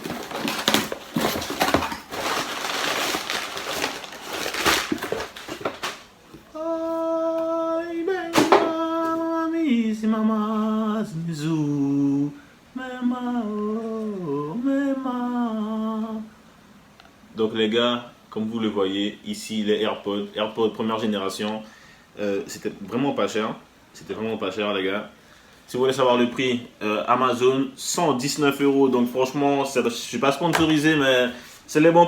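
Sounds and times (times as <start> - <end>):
packaging rustling and crackling: 0.0 - 6.5
man humming: 6.5 - 9.4.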